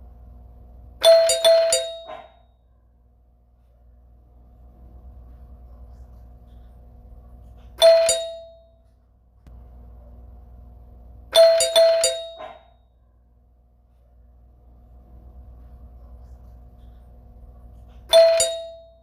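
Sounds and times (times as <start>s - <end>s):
faint steady hum: 0.0s - 19.0s
doorbell chime: 1.0s - 2.4s, 7.8s - 8.8s, 11.3s - 12.7s, 18.1s - 19.0s.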